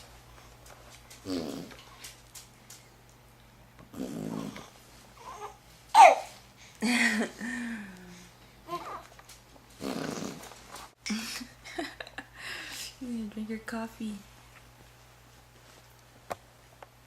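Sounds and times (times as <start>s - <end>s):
infant babbling and cooing: 5.2s - 6.3s, 8.7s - 9.1s.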